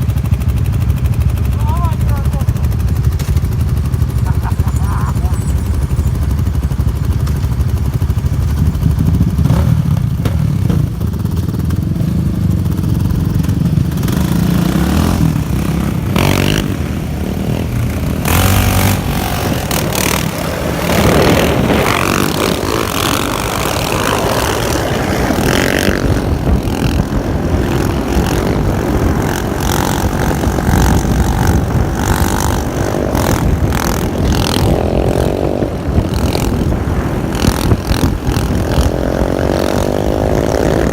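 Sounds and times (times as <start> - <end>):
engines revving: 0.0 - 40.9
sharp clattering knocks: 8.3 - 11.6.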